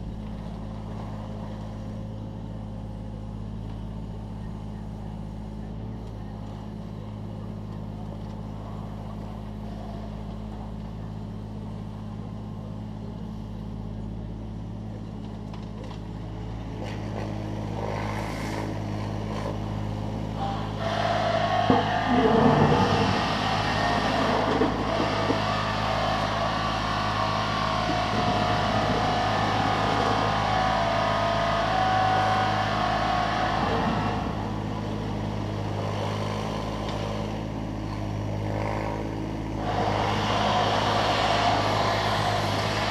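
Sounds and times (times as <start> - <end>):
diesel engine running: 0.0 - 42.9
digger bucket rasping on stone: 20.8 - 31.9.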